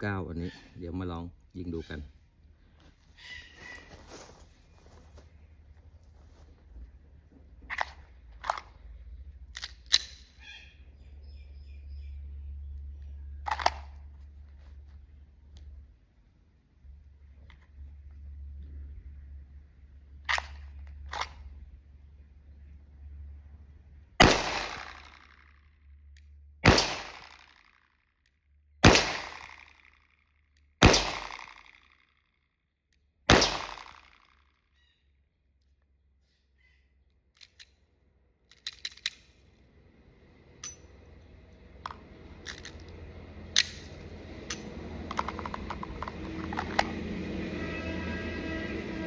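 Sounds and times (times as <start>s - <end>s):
low steady rumble: 1.0s - 31.7s, 37.2s - 49.0s
pistol shots: 24.2s - 25.1s, 26.6s - 27.4s, 28.8s - 29.6s, 30.8s - 31.7s, 33.3s - 34.1s
sharp cracks: 24.2s - 25.6s, 26.6s - 27.8s, 28.8s - 30.0s, 30.8s - 32.1s, 33.3s - 34.4s.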